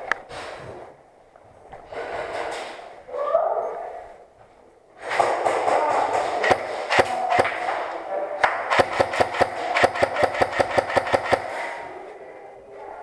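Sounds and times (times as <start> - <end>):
airsoft guns firing: 5.1 - 11.9.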